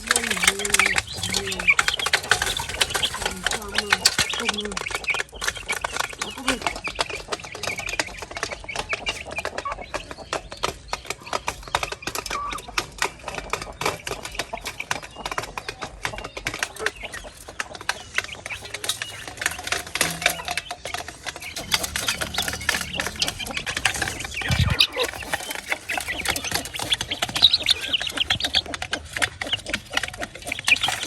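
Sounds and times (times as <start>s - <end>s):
beaks tapping: 0.0s - 31.0s
chickens clucking: 0.0s - 31.0s.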